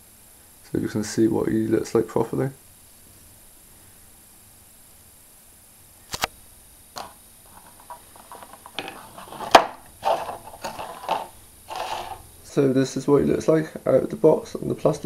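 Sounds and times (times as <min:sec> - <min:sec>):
plastic crackling and crinkling: 0:07.0 - 0:12.2.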